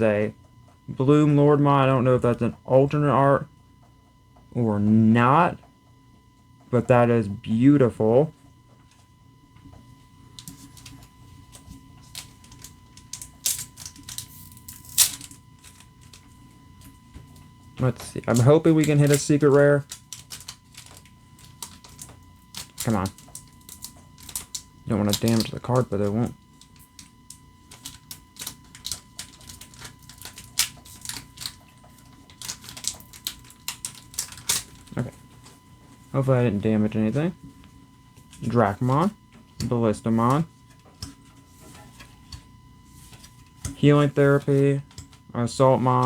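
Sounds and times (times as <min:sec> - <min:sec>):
foil wrapper crinkling: 0:10.3 - 0:35.2.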